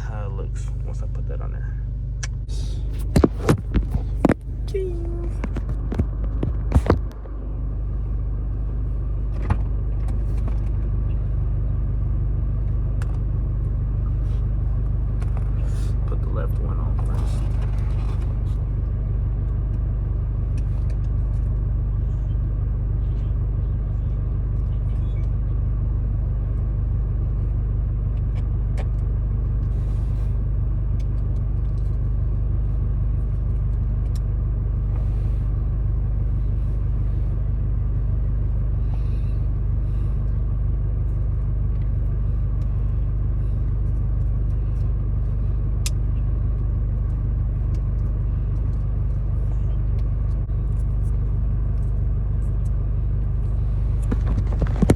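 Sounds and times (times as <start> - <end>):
car engine idling: 0.0 - 54.9.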